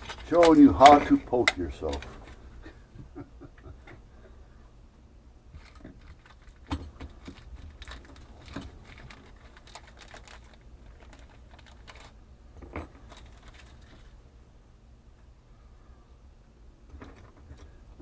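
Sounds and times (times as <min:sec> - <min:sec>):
small metal parts clinking: 0:00.0 - 0:02.4, 0:05.6 - 0:14.2.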